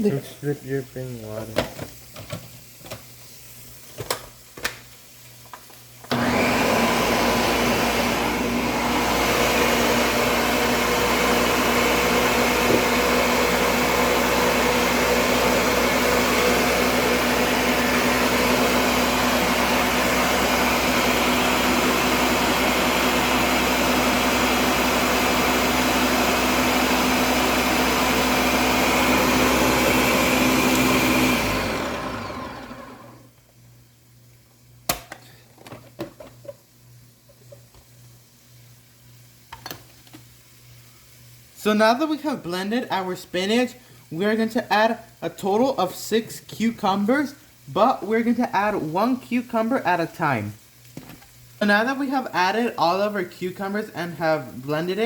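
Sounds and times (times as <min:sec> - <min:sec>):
blender running: 0:06.0 - 0:33.4.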